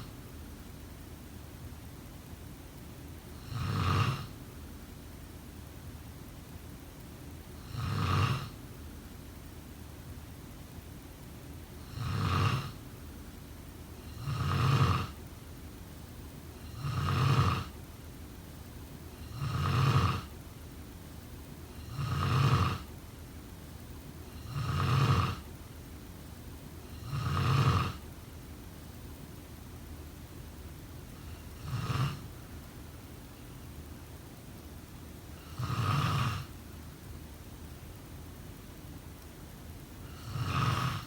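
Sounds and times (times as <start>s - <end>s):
person snoring: 14.1s - 15.2s, 19.3s - 20.3s, 21.8s - 22.9s, 24.4s - 25.4s, 26.9s - 28.0s, 31.2s - 32.3s, 35.4s - 36.5s, 40.0s - 41.0s.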